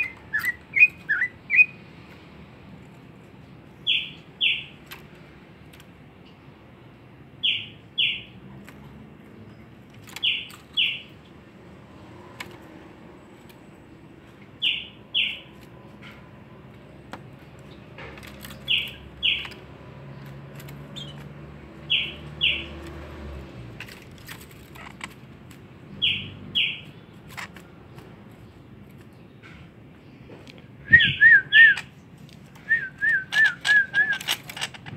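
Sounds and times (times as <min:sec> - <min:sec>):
bird giving sliding chirps: 0:32.7 - 0:34.8.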